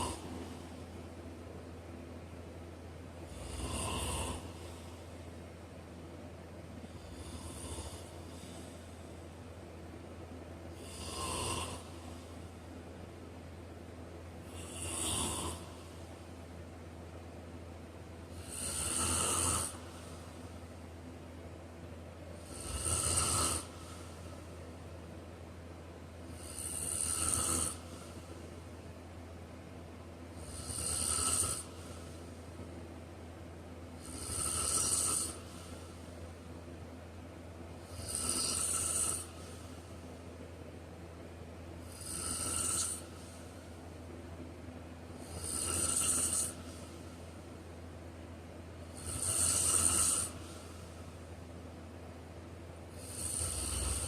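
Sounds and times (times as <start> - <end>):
person snoring: 0.0 - 0.8, 3.3 - 5.0, 6.8 - 8.9, 10.7 - 12.3, 14.4 - 16.1, 18.3 - 20.5, 22.4 - 24.4, 26.3 - 28.4, 30.4 - 32.4, 34.0 - 36.1, 37.8 - 40.0, 41.8 - 43.7, 45.2 - 47.3, 48.9 - 51.0, 52.9 - 54.0.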